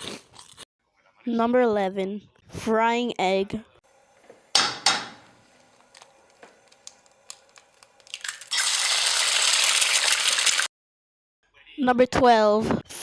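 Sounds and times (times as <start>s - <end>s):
egg shell cracking: 5.6s - 10.7s
egg sizzling in a hot pan: 5.6s - 10.7s.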